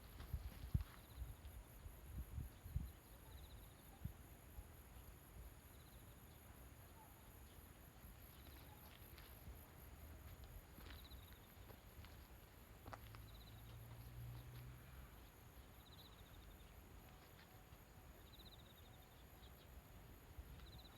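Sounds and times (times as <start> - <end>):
high insect chirps: 0.0 - 20.9
insects trilling: 14.8 - 20.9.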